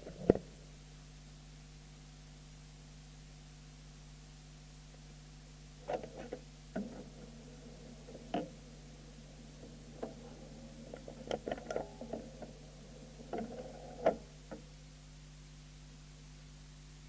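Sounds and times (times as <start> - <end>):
low electrical hum: 0.0 - 17.0
faint clicks and knocks: 5.8 - 14.7.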